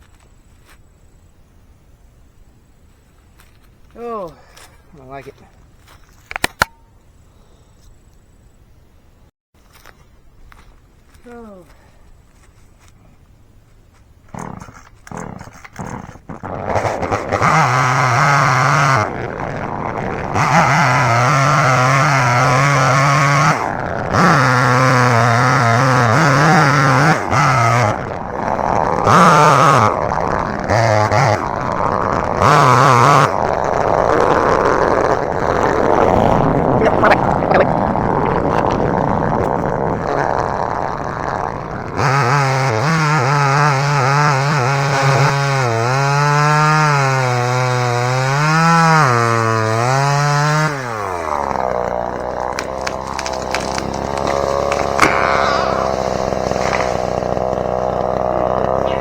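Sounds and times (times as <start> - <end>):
chainsaw cutting wood: 14.2 - 37.1, 38.0 - 59.0.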